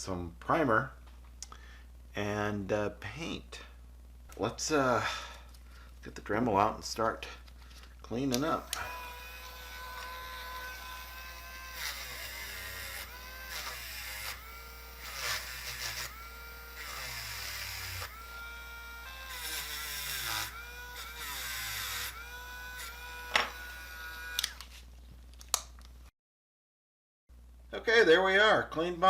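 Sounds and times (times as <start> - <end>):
rotary tool whining: 8.5 - 24.8.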